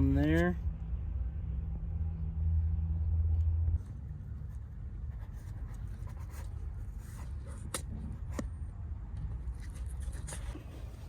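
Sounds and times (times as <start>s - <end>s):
low steady rumble: 0.0s - 11.0s.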